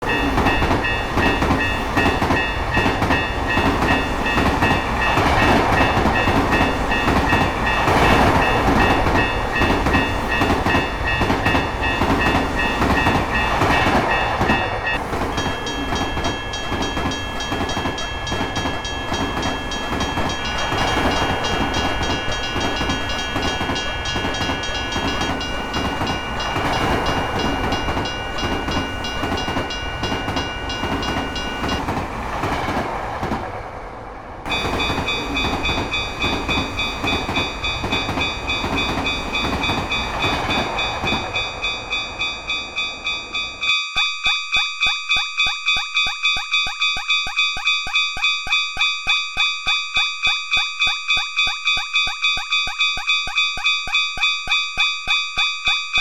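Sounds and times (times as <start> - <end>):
railroad crossing bells ringing: 0.0 - 33.2, 34.5 - 56.0
train rumbling on rails: 0.0 - 43.9.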